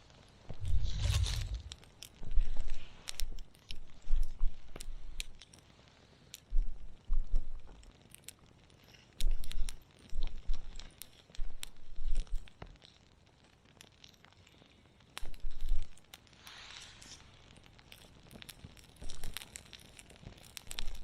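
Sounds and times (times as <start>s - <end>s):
campfire crackling: 0.0s - 21.0s
low rumble: 0.5s - 2.0s.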